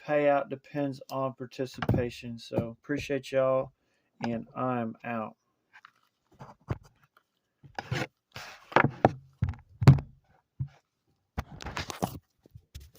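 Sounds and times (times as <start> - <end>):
objects rubbing and scraping: 7.8 - 9.1.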